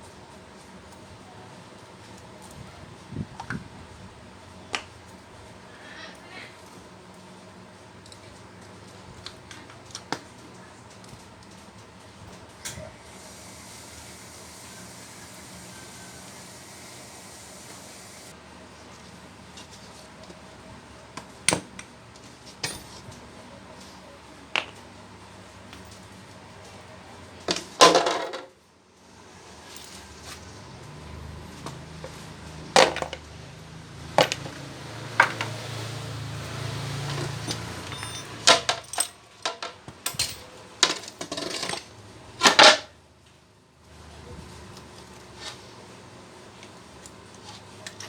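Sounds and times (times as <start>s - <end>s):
metallic clinks and clanks: 36.9s - 41.9s
metal clattering: 37.0s - 41.8s.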